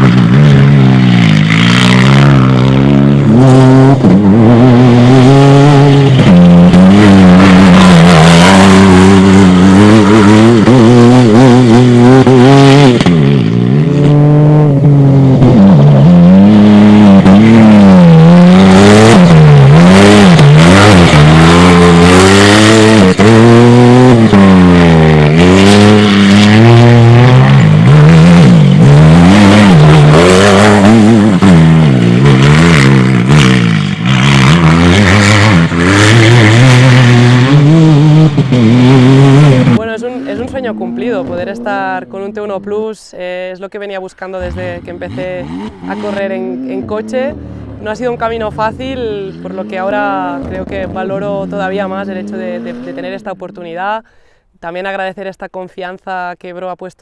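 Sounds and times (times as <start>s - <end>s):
car engine revving hard: 0.0s - 41.5s, 44.4s - 53.1s.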